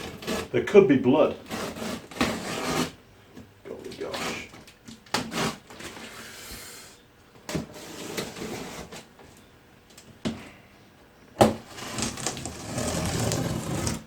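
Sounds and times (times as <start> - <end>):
cardboard rustling and scraping: 0.0 - 0.5, 1.3 - 3.0, 3.7 - 6.5, 7.5 - 9.2, 11.4 - 14.0.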